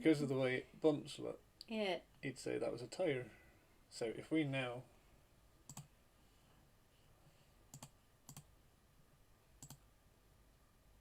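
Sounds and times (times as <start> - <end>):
computer mouse clicking: 5.7 - 5.9, 7.7 - 8.5, 9.6 - 9.9.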